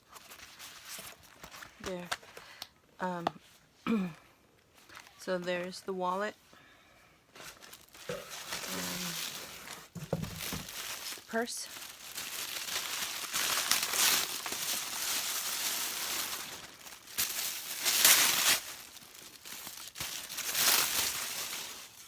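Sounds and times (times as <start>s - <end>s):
packaging crinkling: 7.4s - 22.0s.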